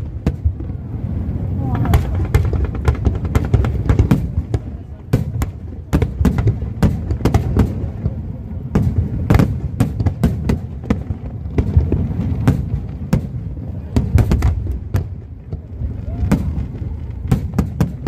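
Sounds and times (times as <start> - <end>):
fireworks bangs and crackles: 0.0 - 18.0
low rumble: 14.6 - 17.4.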